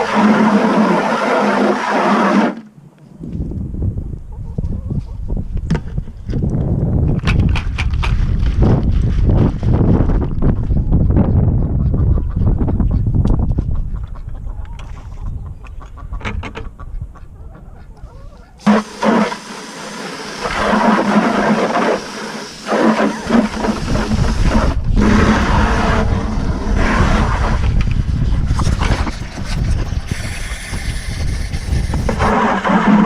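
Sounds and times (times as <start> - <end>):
water rushing into bucket: 0.0 - 2.6, 18.7 - 27.8.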